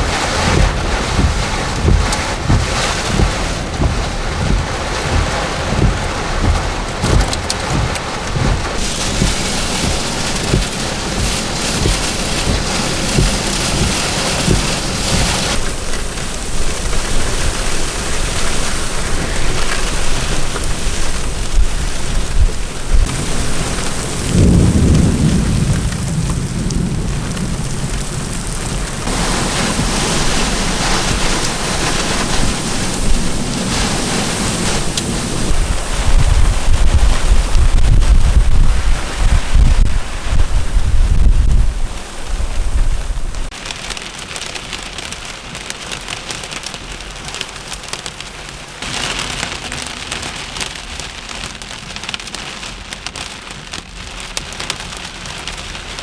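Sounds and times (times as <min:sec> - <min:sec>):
gusting wind: 0:00.0 - 0:43.6
low rumble of thunder: 0:00.0 - 0:43.6
heavy rain: 0:00.0 - 0:56.0.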